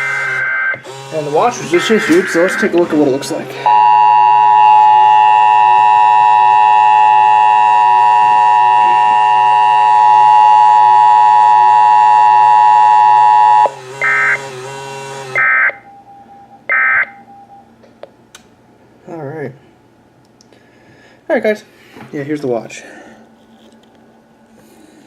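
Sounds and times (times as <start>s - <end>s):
harsh digital data bursts: 0.0s - 14.5s
two-tone alarm: 0.0s - 14.6s, 15.3s - 17.7s.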